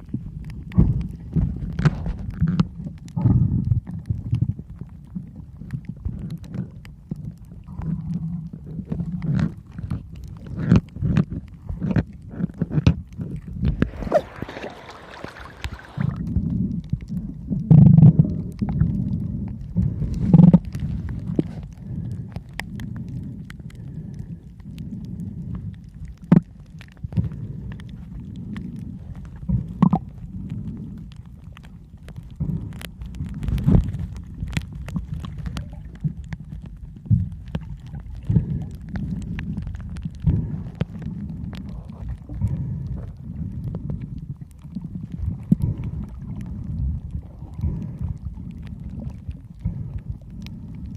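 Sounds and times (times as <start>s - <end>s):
muffled underwater rumbling and thumping: 0.0s - 50.9s
sharp clicks and crackles: 0.0s - 50.9s
bubbles hissing: 13.7s - 16.3s.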